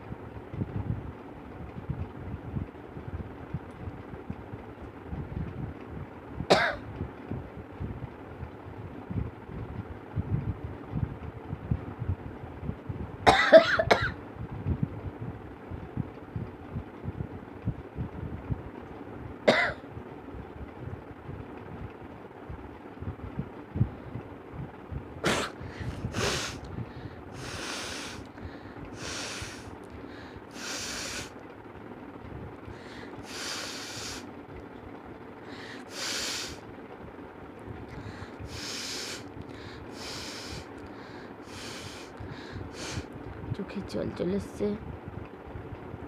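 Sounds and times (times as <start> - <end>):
person sneezing: 25.2 - 25.6
forceful nose blowing: 25.2 - 26.7, 27.4 - 28.3, 29.0 - 29.7, 30.5 - 31.3, 32.8 - 34.2, 35.6 - 36.6, 38.4 - 39.2, 39.9 - 40.7, 41.4 - 43.1.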